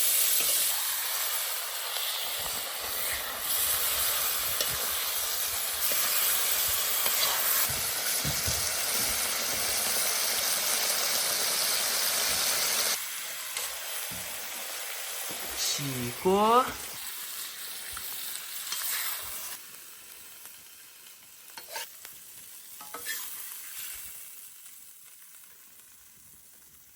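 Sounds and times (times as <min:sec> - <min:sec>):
vegetables sizzling in oil: 0:00.0 - 0:26.9.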